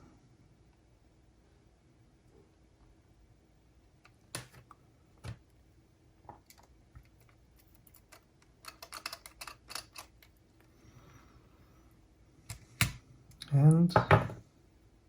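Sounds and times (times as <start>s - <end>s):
tools clicking on small parts: 7.6s - 10.4s.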